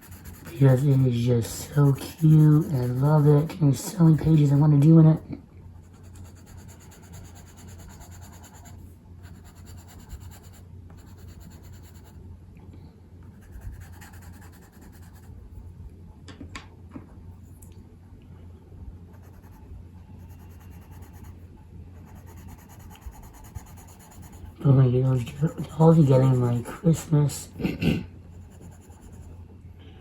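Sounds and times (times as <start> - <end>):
pencil scratching on paper: 0.0 - 4.8, 5.8 - 12.2, 13.3 - 15.4, 19.1 - 21.4, 22.0 - 24.6, 25.2 - 27.1, 28.3 - 29.4
steady low hum: 0.0 - 30.0.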